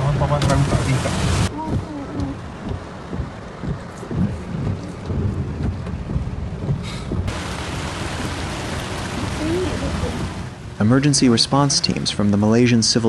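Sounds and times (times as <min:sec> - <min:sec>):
heavy rain hissing: 0:00.5 - 0:01.5, 0:06.9 - 0:11.8
low thunder rumble: 0:00.9 - 0:10.8.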